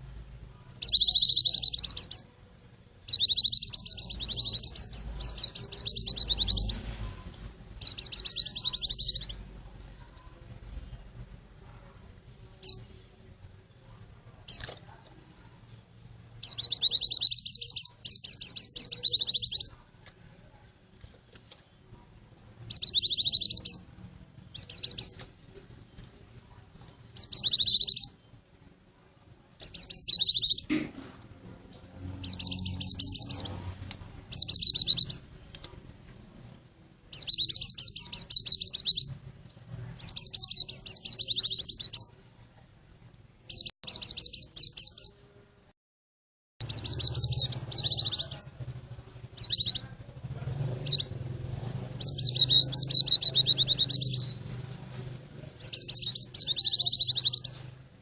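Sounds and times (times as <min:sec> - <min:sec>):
white-eye twittering song: 0:00.8 - 0:02.3, 0:03.0 - 0:07.0, 0:07.8 - 0:09.4, 0:16.4 - 0:19.8, 0:22.7 - 0:23.9, 0:24.5 - 0:25.2, 0:27.2 - 0:28.2, 0:29.6 - 0:30.7, 0:32.2 - 0:35.2, 0:37.1 - 0:39.2, 0:40.0 - 0:42.1, 0:43.5 - 0:45.2, 0:46.6 - 0:48.5, 0:49.4 - 0:49.9, 0:52.0 - 0:54.5, 0:55.6 - 0:57.6.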